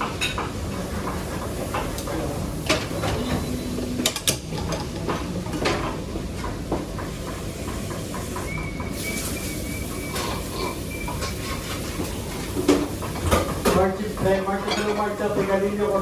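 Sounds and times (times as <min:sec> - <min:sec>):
kitchen rumble and hiss: 0:00.0 - 0:16.0
utensils and pans knocking: 0:02.7 - 0:05.9, 0:12.6 - 0:15.6.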